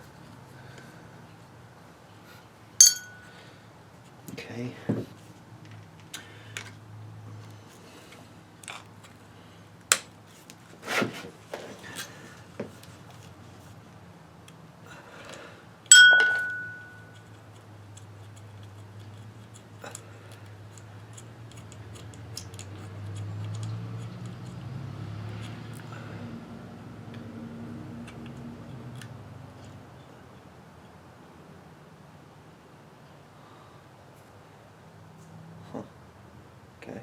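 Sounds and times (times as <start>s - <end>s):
sharp metallic ping: 2.8s - 3.3s, 15.9s - 17.1s
low steady hum: 2.8s - 3.6s, 15.8s - 17.4s
small metal parts clicking: 20.7s - 24.6s.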